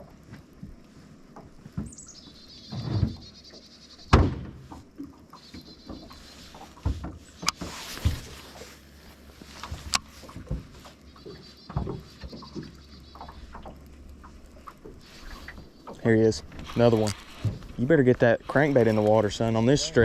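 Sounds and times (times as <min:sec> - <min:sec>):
knocks against boat: 0:04.1 - 0:04.8.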